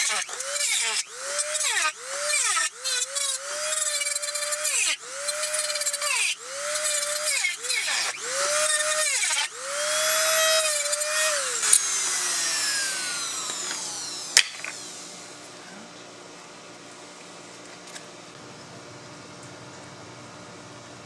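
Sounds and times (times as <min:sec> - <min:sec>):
rotary tool whining: 0:00.0 - 0:15.8.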